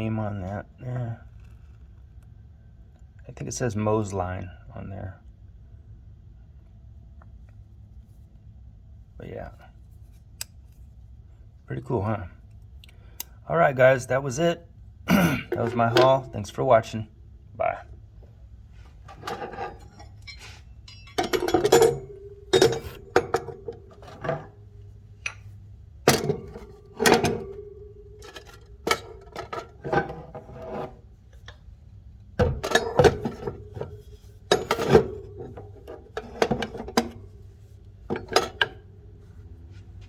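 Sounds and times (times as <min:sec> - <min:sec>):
hand tools knocking and clattering: 0:15.4 - 0:16.5, 0:19.1 - 0:25.5, 0:26.1 - 0:31.6, 0:32.4 - 0:37.4, 0:38.0 - 0:38.9.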